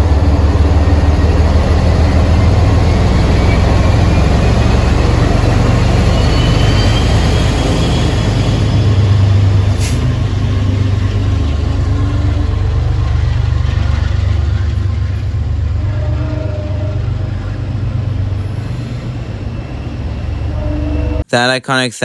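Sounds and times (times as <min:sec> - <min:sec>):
diesel locomotive engine throbbing: 0:00.0 - 0:21.3
faint high squeal: 0:02.2 - 0:10.1, 0:14.8 - 0:21.2.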